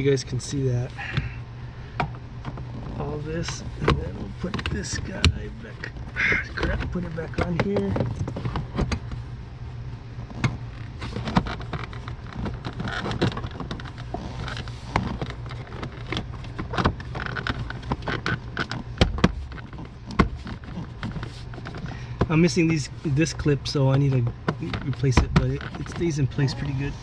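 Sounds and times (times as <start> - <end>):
steady low hum: 0.0 - 27.0
car parts clicking and knocking: 0.4 - 9.2, 10.2 - 26.8.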